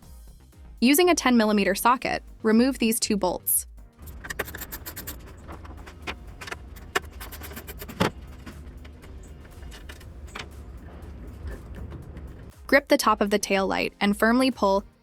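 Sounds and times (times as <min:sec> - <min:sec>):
ratchet clicking: 0:04.0 - 0:12.5.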